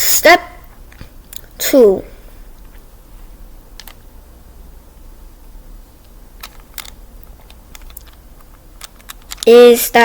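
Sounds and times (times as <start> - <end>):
plastic puzzle clicks: 3.8 - 4.0, 6.4 - 9.6.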